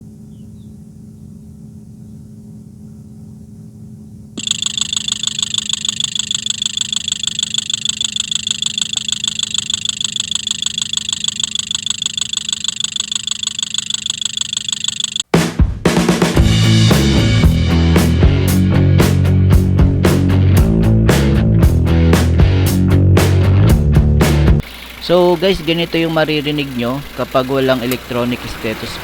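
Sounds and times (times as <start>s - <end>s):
engine idling hum: 0.0s - 15.2s, 16.6s - 29.0s
rapid mechanical ticking: 4.4s - 15.2s, 24.6s - 29.0s.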